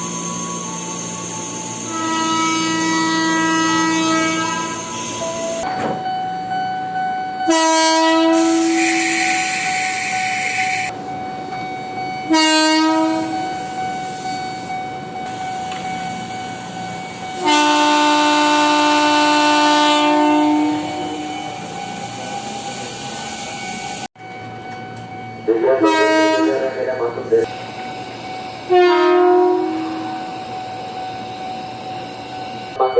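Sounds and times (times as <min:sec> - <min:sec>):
electric train horn: 0:01.9 - 0:04.9, 0:07.4 - 0:10.9, 0:12.3 - 0:13.4, 0:17.4 - 0:21.5, 0:25.8 - 0:26.8, 0:28.7 - 0:30.3
steady high tone: 0:20.5 - 0:32.9.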